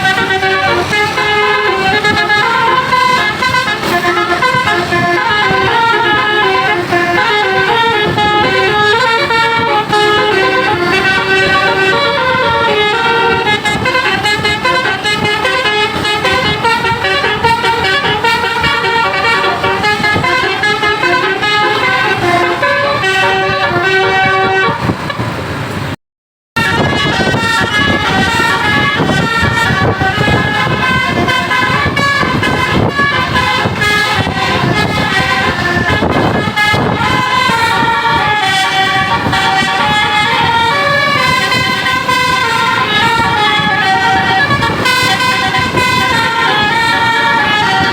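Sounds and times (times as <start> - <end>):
musical air horn tune: 0.0 - 25.4, 26.6 - 47.9
engine and road rumble: 0.0 - 26.0, 26.6 - 47.9.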